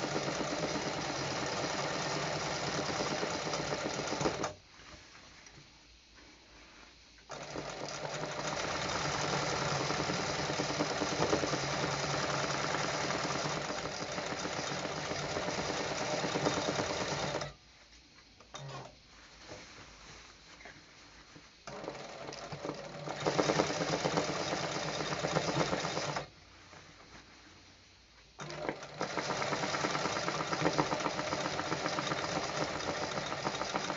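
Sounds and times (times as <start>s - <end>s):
sewing machine stitching: 0.0s - 4.6s, 7.3s - 17.6s, 21.7s - 26.3s, 28.4s - 33.9s.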